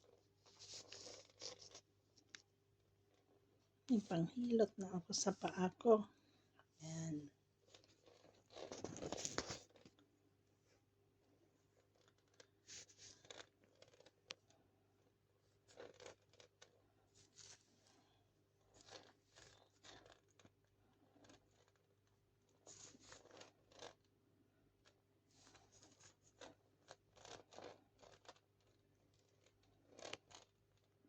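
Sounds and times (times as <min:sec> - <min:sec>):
object rustling and scraping: 0:00.0 - 0:02.3, 0:07.6 - 0:10.0, 0:11.7 - 0:14.2, 0:17.1 - 0:18.0, 0:22.6 - 0:24.0.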